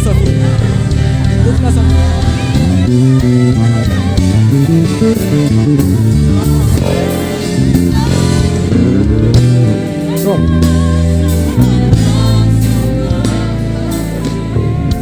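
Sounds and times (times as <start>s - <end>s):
bass guitar line: 0.0s - 15.0s
worship band playing: 0.0s - 15.0s.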